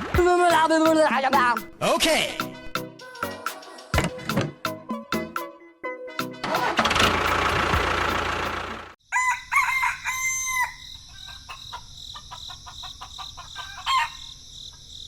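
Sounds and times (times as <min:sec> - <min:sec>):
rooster crowing: 0:09.0 - 0:14.4
insects chirring: 0:09.0 - 0:15.0.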